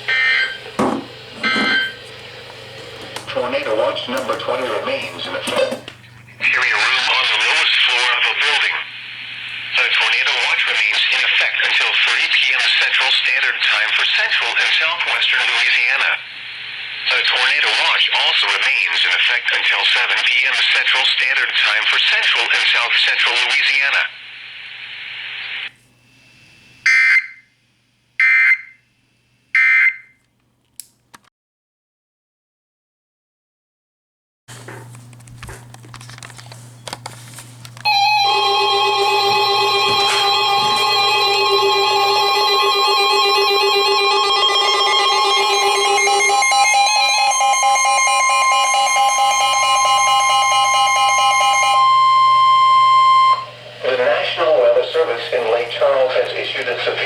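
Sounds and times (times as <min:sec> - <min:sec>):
radio hiss: 0:00.0 - 0:26.9, 0:53.5 - 0:57.0
electronic tones stepping in pitch: 0:37.9 - 0:53.5
rapidly pulsing tone: 0:37.9 - 0:53.5
steady electronic alert tone: 0:37.9 - 0:53.5.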